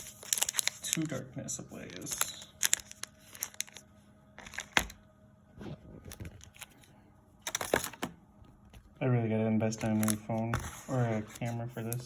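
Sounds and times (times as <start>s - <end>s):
foil wrappers crinkling: 0.0s - 5.0s, 9.7s - 12.0s.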